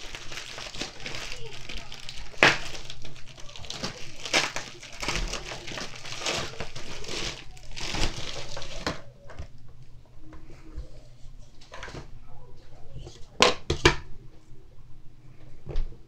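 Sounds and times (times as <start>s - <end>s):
packaging crinkling: 0.0s - 9.6s.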